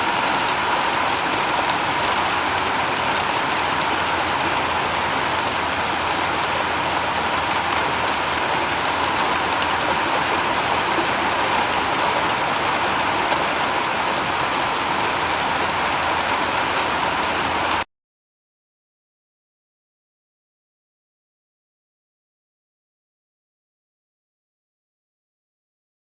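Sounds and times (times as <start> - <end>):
rain on a shingle roof: 0.0 - 17.9.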